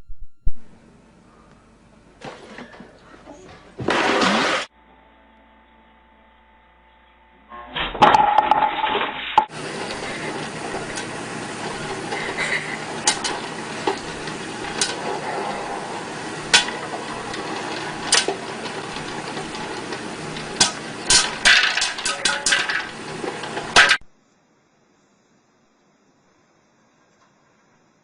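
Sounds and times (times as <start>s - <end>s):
hard objects knocking and clattering: 8.0s - 24.0s
background hiss: 23.8s - 28.0s.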